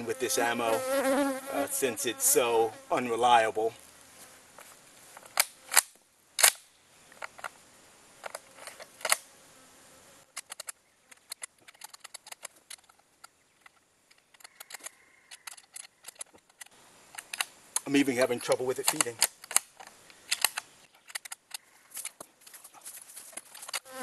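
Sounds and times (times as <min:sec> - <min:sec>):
faint ticks and rattles: 0:10.3 - 0:24.0
rifle bolt metal clacks: 0:18.4 - 0:22.2.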